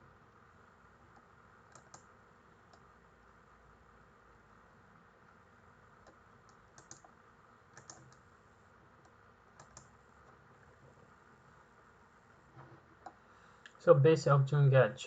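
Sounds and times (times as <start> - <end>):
steady low hiss: 0.0 - 15.0
keyboard keystrokes: 1.1 - 2.1, 6.0 - 7.1, 7.7 - 8.2, 9.6 - 9.9.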